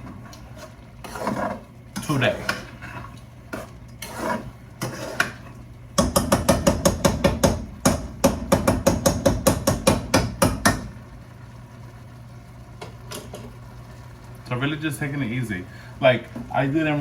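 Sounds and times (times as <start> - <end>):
rapid sharp knocks: 6.0 - 10.9.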